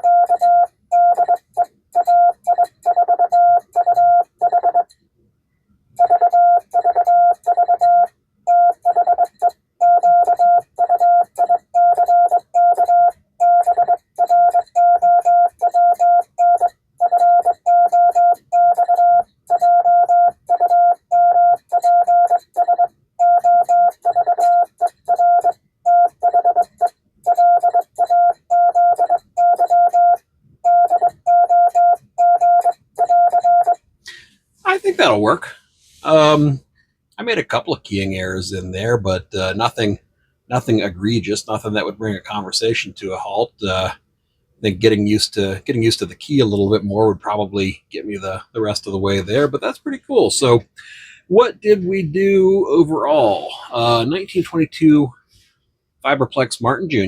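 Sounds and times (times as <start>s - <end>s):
morse code sidetone beeps: 0.0s - 4.9s, 6.0s - 33.8s.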